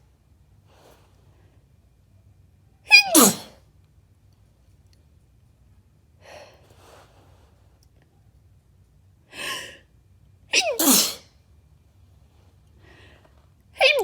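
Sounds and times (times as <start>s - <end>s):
woman sneezing: 2.9s - 3.6s, 10.5s - 11.3s.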